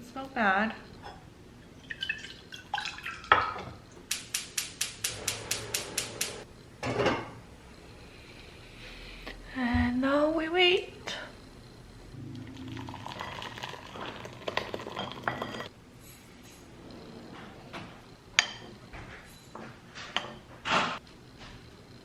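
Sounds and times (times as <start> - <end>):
dishes and utensils clinking: 12.8 - 15.7.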